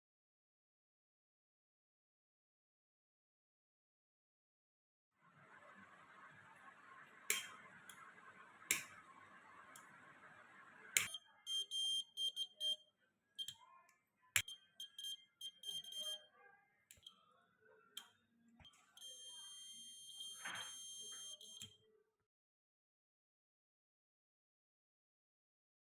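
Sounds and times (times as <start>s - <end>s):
piezo buzzer beeps: 11.0s - 12.8s, 14.4s - 16.2s, 18.6s - 21.7s.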